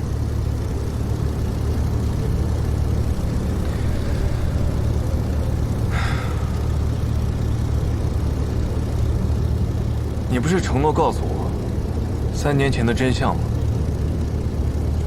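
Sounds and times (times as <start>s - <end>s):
propeller aircraft engine drone: 0.0s - 15.0s.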